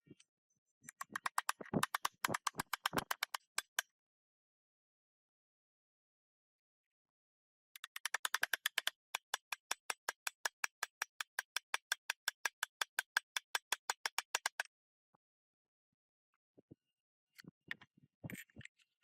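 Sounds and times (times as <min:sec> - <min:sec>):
rapid sharp clicks: 0:00.9 - 0:03.8, 0:07.8 - 0:14.7.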